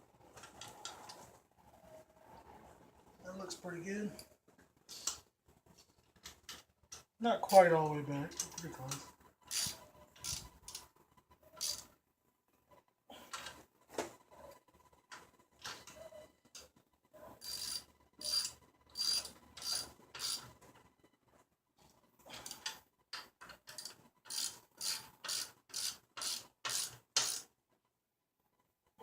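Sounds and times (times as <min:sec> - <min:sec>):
ratchet wrench clicking: 0:09.5 - 0:10.8, 0:11.6 - 0:11.8, 0:17.4 - 0:20.5, 0:23.7 - 0:27.4.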